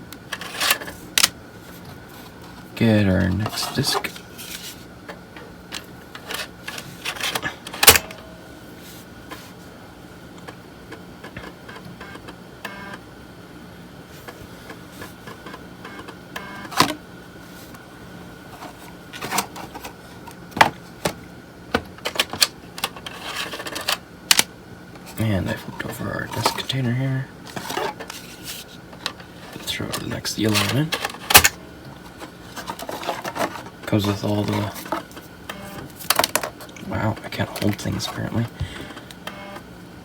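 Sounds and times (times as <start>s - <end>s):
steady hum: 0.0s - 40.0s
floppy disk drive clicks: 10.4s - 13.0s.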